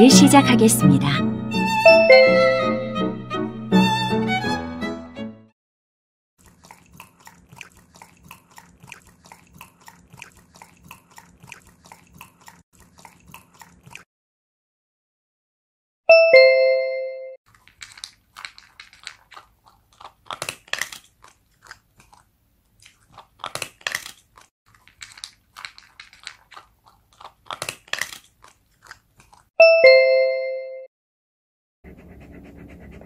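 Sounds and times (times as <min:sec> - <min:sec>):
dog crunching food: 0:06.4 - 0:14.0, 0:17.5 - 0:29.5
two-note doorbell chime: 0:16.1 - 0:17.4, 0:29.6 - 0:30.9.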